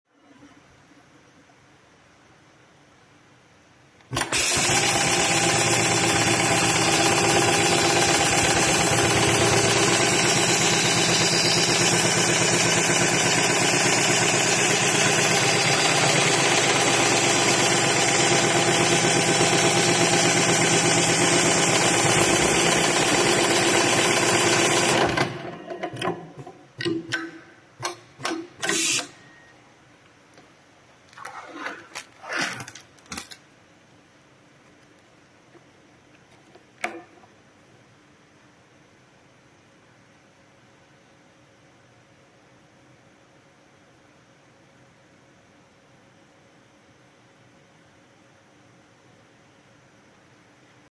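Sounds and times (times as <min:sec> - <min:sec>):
short mechanical bursts: 0:04.1 - 0:25.5, 0:26.8 - 0:29.5
sewing machine stitching: 0:04.1 - 0:27.1, 0:27.8 - 0:29.3.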